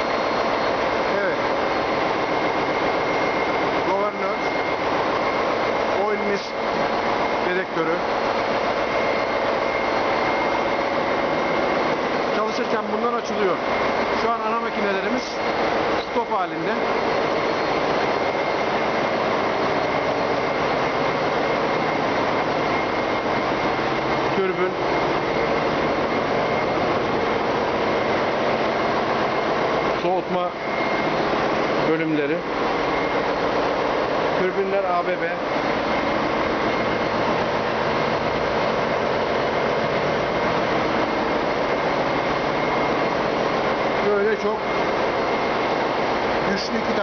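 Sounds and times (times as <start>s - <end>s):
engine room machinery din: 0.0s - 47.0s
thin steady whine: 0.0s - 47.0s.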